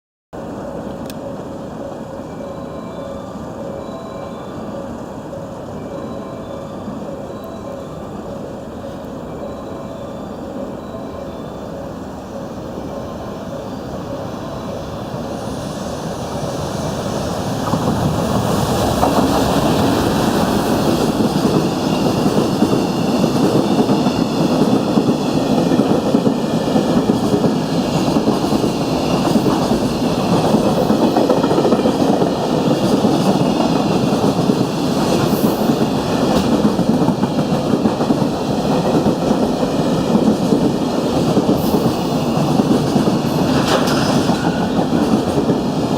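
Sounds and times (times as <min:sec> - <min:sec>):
freight train rumble: 0:00.4 - 0:45.9
wheels clacking over rail joints: 0:17.6 - 0:45.9.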